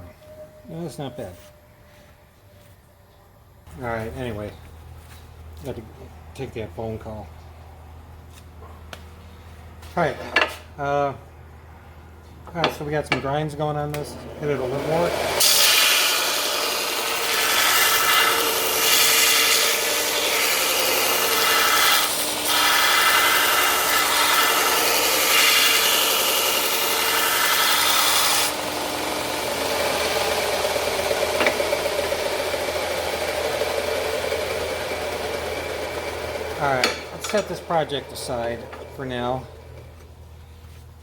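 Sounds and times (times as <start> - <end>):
belt sander grinding steel: 13.9 - 40.0.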